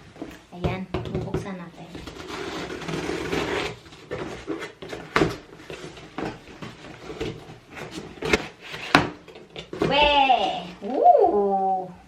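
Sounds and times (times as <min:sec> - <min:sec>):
cardboard tearing: 0:02.0 - 0:09.2
cardboard knocks and rustles: 0:03.8 - 0:10.0.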